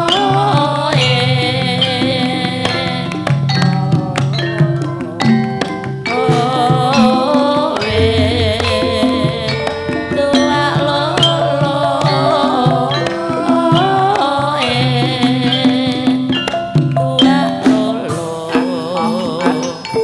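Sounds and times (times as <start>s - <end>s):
low hand-drum strokes: 0.0s - 19.6s
woman singing ornamented melody: 0.0s - 20.0s
sustained pitched instrument tones: 1.0s - 16.2s.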